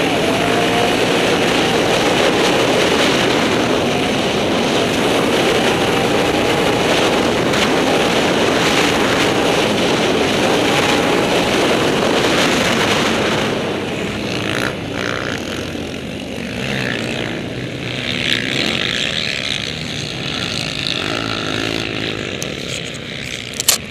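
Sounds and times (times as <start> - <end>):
wind rush: 0.0 - 23.2
quad engine running hard: 0.0 - 23.9.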